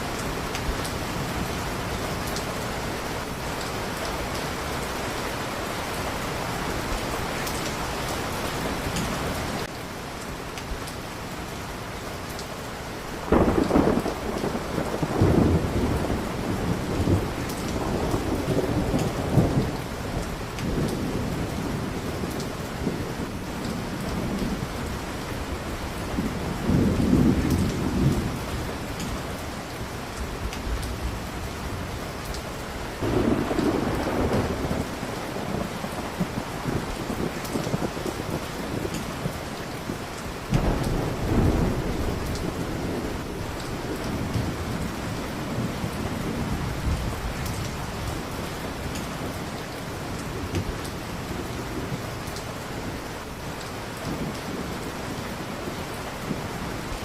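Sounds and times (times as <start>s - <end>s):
heavy rain: 0.0s - 57.0s
rolling thunder: 13.2s - 29.5s, 33.0s - 52.3s.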